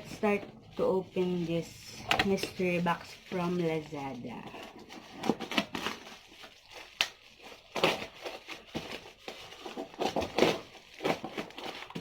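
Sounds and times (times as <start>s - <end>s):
packing tape tearing: 4.5s - 12.0s
cardboard scraping: 7.3s - 12.0s.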